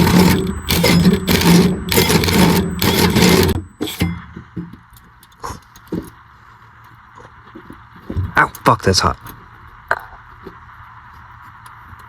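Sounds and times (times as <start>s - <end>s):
power drill cutting under load: 0.0s - 4.0s.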